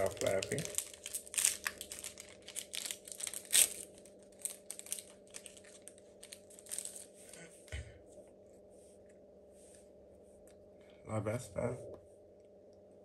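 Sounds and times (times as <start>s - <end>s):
foil wrapper crinkling and tearing: 0.0s - 7.1s.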